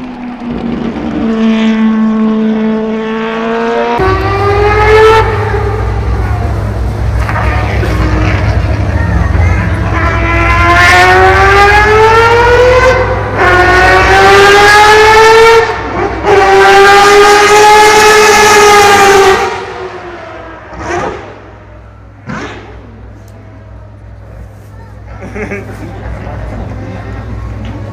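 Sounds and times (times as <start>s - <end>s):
racing engine high-pitched wail: 0.0s - 21.4s.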